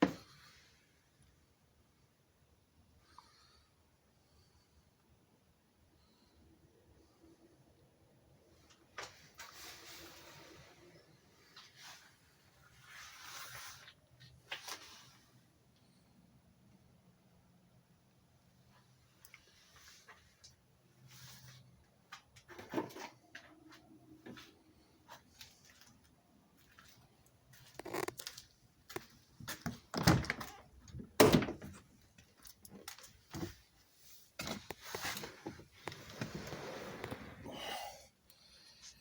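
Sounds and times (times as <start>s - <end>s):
handling knocks and clunks: 29.4s - 31.9s.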